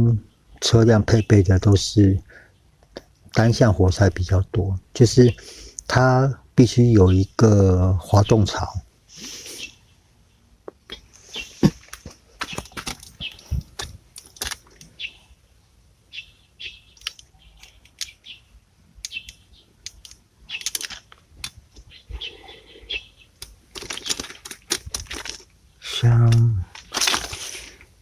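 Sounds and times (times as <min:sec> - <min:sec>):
metallic clicks and clatter: 0:12.5 - 0:14.9, 0:19.8 - 0:21.6, 0:23.4 - 0:25.5.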